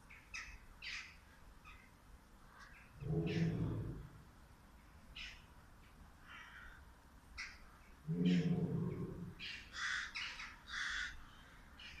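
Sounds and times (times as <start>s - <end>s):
harsh bird calls: 2.5s - 4.2s, 7.4s - 12.0s.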